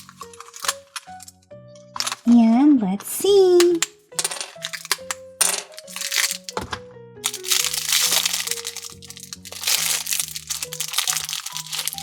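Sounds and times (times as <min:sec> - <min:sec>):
plastic wrapper crinkling: 0:00.0 - 0:01.3, 0:04.6 - 0:06.6, 0:07.2 - 0:12.0
light background music: 0:00.0 - 0:12.0.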